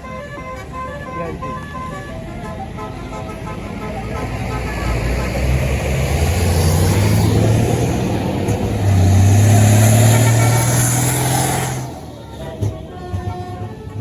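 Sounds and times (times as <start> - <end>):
bus diesel engine passing: 0.0 - 14.0.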